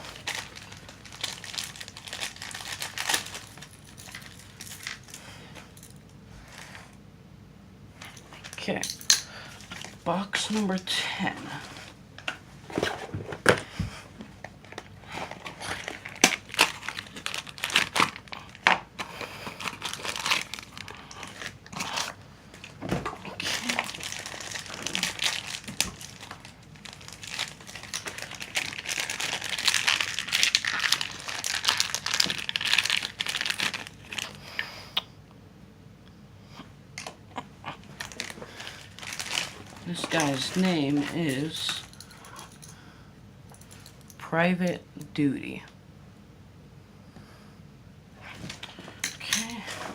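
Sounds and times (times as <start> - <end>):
packaging crinkling and tearing: 0.0 - 5.3, 14.6 - 34.4, 37.8 - 42.6.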